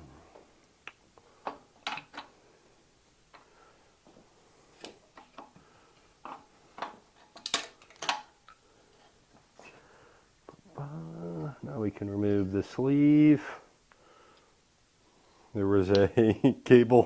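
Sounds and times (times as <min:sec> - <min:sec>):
tools and bike parts clicking: 0:01.5 - 0:02.3, 0:06.2 - 0:08.6.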